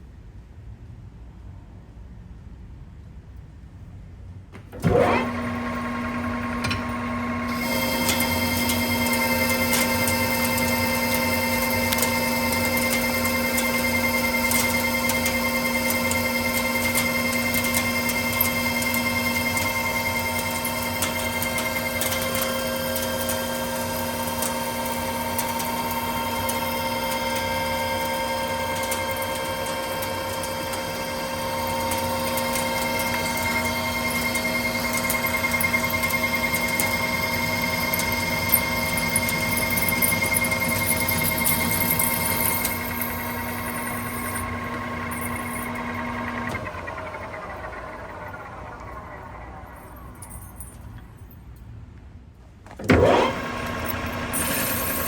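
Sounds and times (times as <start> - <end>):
lathe spindle whine: 4.8 - 50.8, 52.8 - 55.0.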